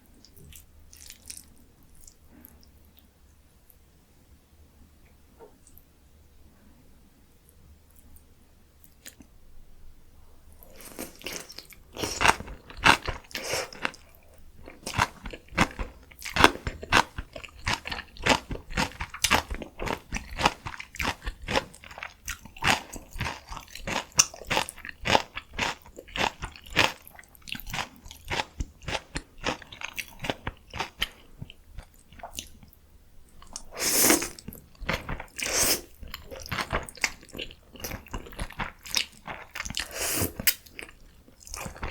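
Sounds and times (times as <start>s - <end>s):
crunchy chewing: 10.6s - 32.8s, 33.4s - 41.9s.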